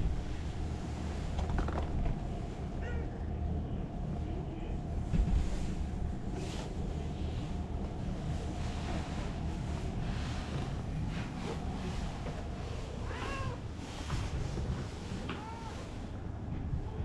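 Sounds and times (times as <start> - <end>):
steady low rumble: 0.0 - 17.0
cat meowing: 13.0 - 13.7, 15.2 - 15.9.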